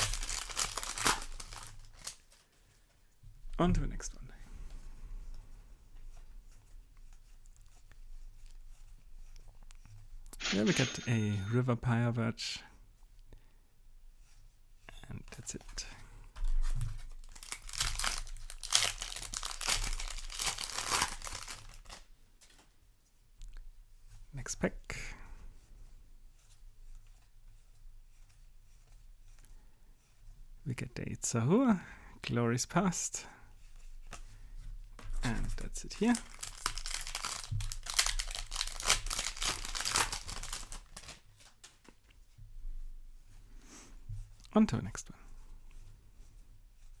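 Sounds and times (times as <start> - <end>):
foil wrapper crinkling and tearing: 0.0 - 2.4, 16.6 - 22.1, 35.6 - 41.8
trading cards rustling: 0.0 - 2.4, 10.4 - 11.2, 17.2 - 22.0, 35.4 - 41.8.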